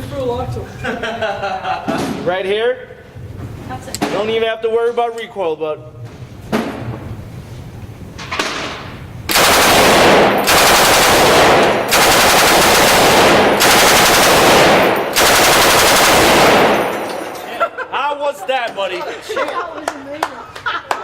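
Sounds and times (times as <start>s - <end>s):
machine gun firing bursts: 9.3s - 17.4s.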